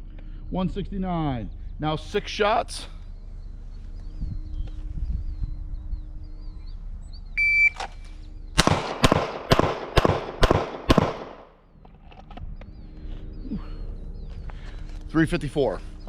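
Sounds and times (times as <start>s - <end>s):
shot timer beep: 7.4s - 7.8s
handgun shots with echo: 8.6s - 11.5s.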